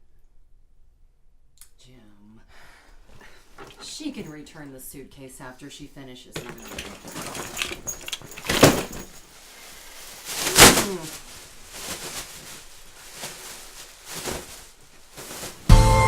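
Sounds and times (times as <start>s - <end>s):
handling noises: 3.5s - 4.5s, 6.4s - 16.0s
loud thuds: 6.4s - 9.2s.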